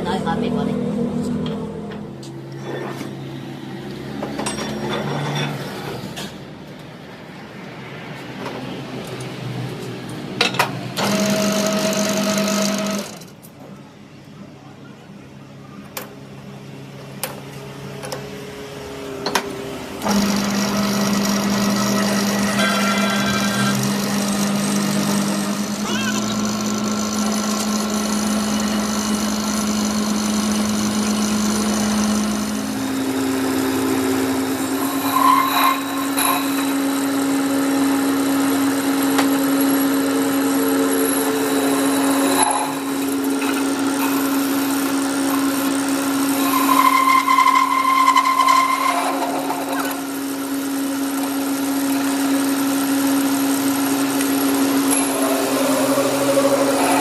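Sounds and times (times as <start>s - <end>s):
metal lathe humming: 19.8s - 57.0s
cutting squeals: 20.0s - 24.8s, 34.0s - 38.4s, 46.2s - 51.2s, 54.3s - 57.0s.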